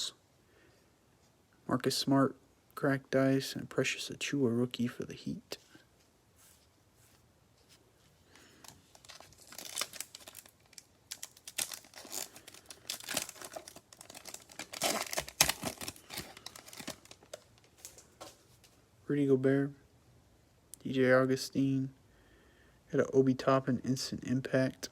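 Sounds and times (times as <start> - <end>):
plastic wrapper tearing and crinkling: 8.6 - 18.7.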